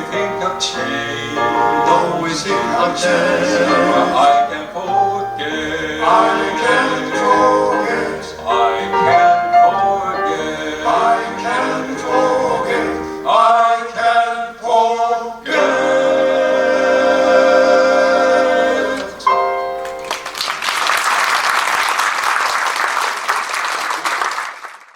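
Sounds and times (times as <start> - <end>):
male vocal quartet singing: 0.0 - 19.3
piano: 0.0 - 21.8
audience applause: 19.8 - 24.9.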